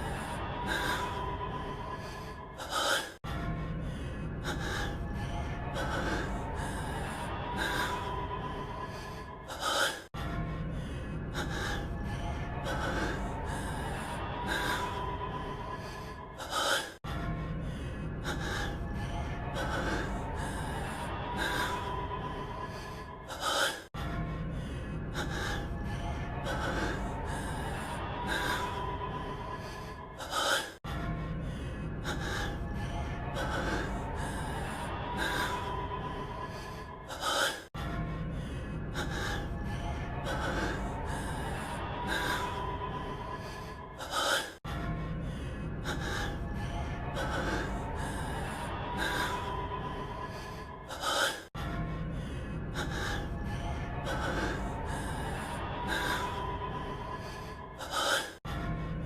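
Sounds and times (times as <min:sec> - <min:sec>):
man breathing heavily and gasping: 0:00.0 - 0:58.9.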